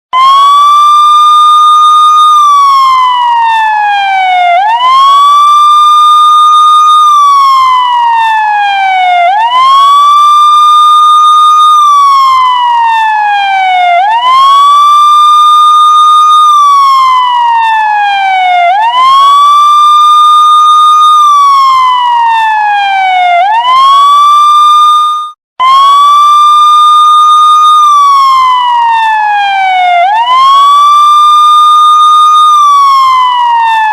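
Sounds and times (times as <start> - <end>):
police siren wailing: 0.1 - 33.9.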